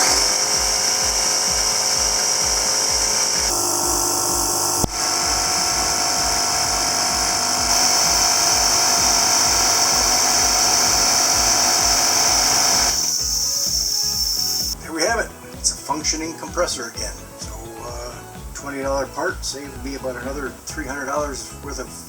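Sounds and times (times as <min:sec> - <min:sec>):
air compressor whining: 0:00.0 - 0:15.1
sharp click: 0:04.8 - 0:05.0.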